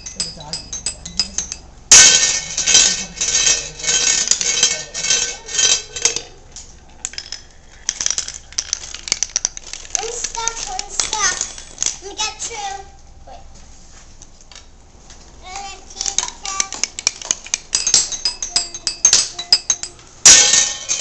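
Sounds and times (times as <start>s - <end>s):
marbles clattering through a marble run: 0.0s - 6.3s, 7.0s - 12.0s, 16.0s - 21.0s.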